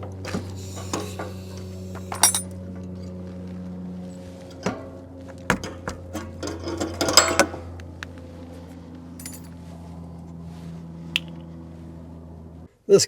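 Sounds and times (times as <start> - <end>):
steady low hum: 0.0 - 12.8
hand tools clattering: 0.3 - 2.5, 9.2 - 9.5.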